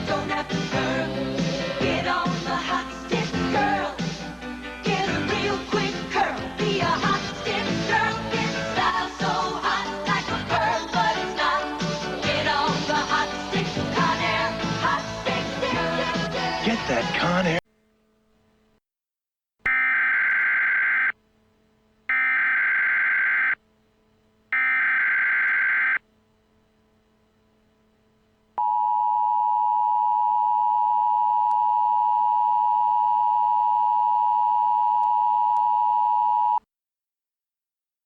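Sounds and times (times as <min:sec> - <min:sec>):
data tone bursts: 0:19.7 - 0:21.1, 0:22.1 - 0:23.6, 0:24.6 - 0:26.0
two-tone attention signal: 0:19.7 - 0:21.1, 0:22.1 - 0:23.6, 0:24.6 - 0:26.0.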